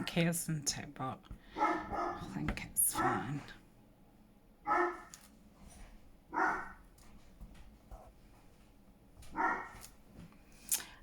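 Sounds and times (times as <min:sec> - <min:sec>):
dog barking: 0:01.6 - 0:02.3, 0:03.0 - 0:03.4, 0:04.6 - 0:05.1, 0:06.3 - 0:06.8, 0:09.3 - 0:09.8.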